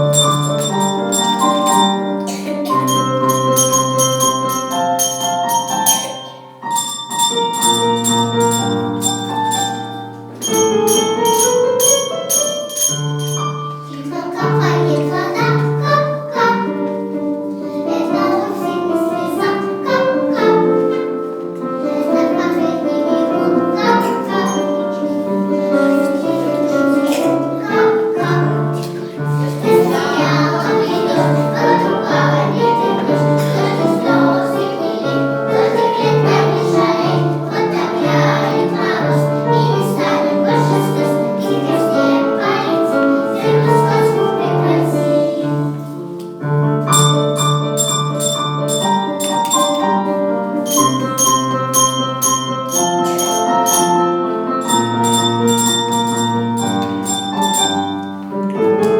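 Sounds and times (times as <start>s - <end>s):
bell-like chiming tones: 0.0s - 14.5s, 23.9s - 25.3s, 46.9s - 58.6s
children singing: 0.0s - 46.0s, 46.9s - 58.9s
instrumental accompaniment: 0.0s - 58.9s.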